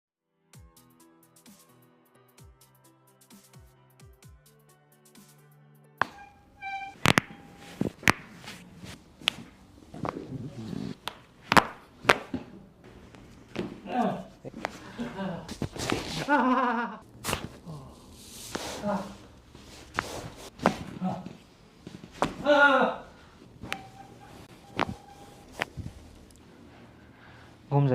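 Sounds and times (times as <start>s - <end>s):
hands slapping a body: 7.0s - 8.6s, 9.2s - 10.2s, 11.0s - 12.5s, 17.2s - 17.6s, 19.9s - 21.0s, 21.9s - 22.5s.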